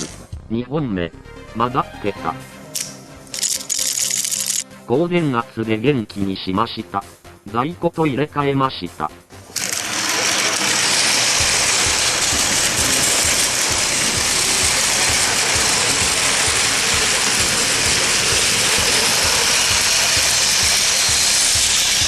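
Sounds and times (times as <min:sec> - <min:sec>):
toy train motor whirring: 0:02.8 - 0:04.6, 0:09.4 - 0:22.0.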